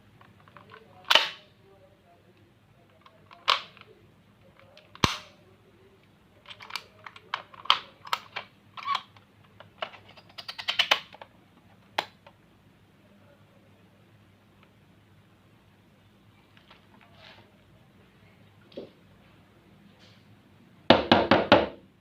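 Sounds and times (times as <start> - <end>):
plastic objects clicking and snapping: 0.2 - 1.4, 2.9 - 3.9, 4.5 - 5.4, 6.4 - 12.4
loud knock: 20.9 - 21.8.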